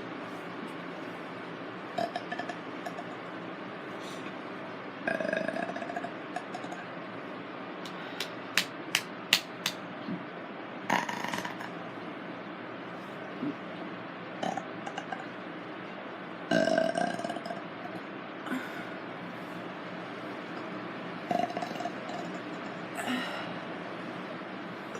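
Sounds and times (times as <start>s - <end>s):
person burping: 16.5s - 17.6s.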